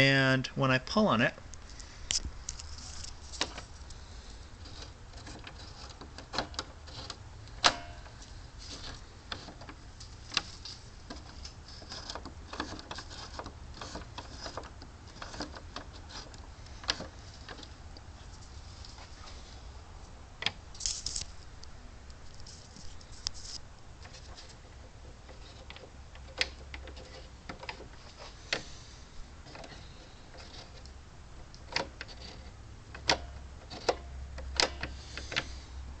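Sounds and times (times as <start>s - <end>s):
low steady hum: 0.0s - 36.0s
metallic clicks of hood latch: 5.4s - 8.2s, 32.9s - 35.6s.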